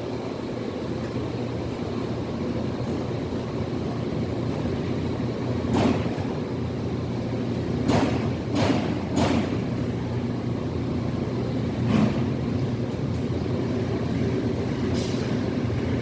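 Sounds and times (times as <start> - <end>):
low construction drone: 0.0 - 16.0
sharp knocks: 7.8 - 9.6.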